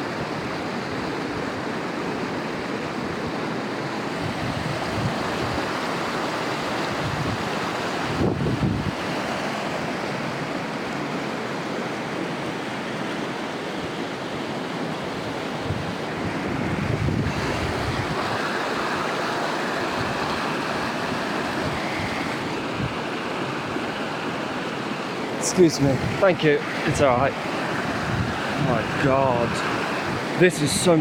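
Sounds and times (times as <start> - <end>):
floodwater rushing: 0.0 - 31.0
wind buffeting microphone: 4.0 - 6.2, 6.8 - 9.2, 15.1 - 24.0, 25.3 - 31.0.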